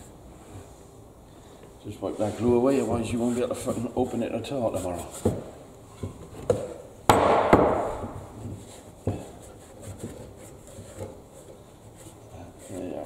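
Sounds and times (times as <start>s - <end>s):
knocks on wood: 6.5s - 8.2s.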